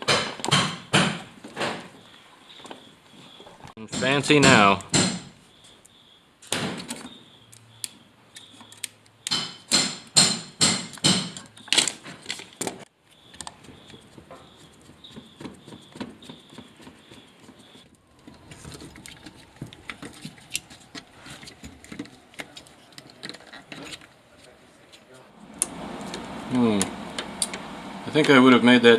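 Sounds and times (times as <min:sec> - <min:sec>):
sharp knocks of tools: 0:03.9 - 0:05.3, 0:09.3 - 0:11.4.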